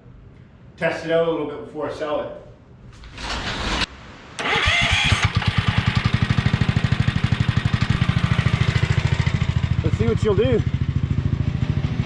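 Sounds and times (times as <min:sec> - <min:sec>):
small engine starting and idling: 0:03.0 - 0:11.2.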